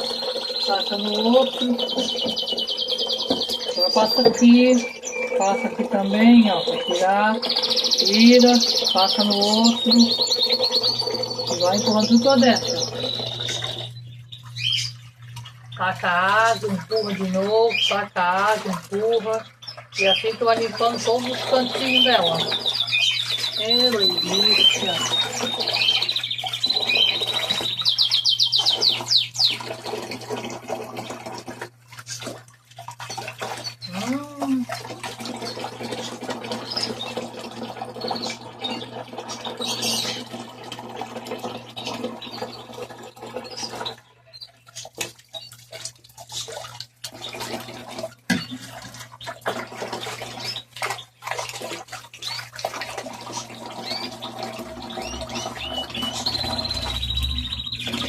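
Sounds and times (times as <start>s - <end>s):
small birds chirping: 0.0s - 29.7s, 33.1s - 34.7s, 35.4s - 40.4s, 52.2s - 52.6s, 53.2s - 58.0s
water splashing and scrubbing: 0.0s - 58.0s.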